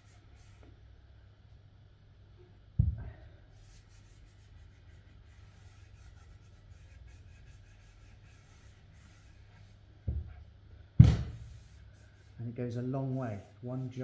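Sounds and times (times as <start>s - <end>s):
pad rubbing on wood: 3.6s - 10.4s, 11.0s - 12.4s.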